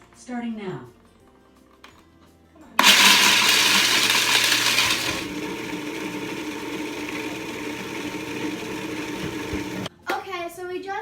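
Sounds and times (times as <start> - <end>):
food processor grinding nuts: 2.8 - 9.9.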